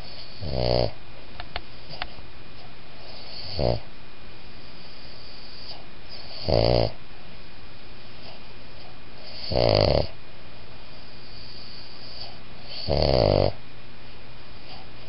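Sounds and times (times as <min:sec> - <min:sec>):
dog snoring: 0:00.0 - 0:01.0, 0:03.0 - 0:03.9, 0:04.6 - 0:07.0, 0:09.2 - 0:10.2, 0:11.0 - 0:13.6
steady hiss: 0:00.0 - 0:15.0.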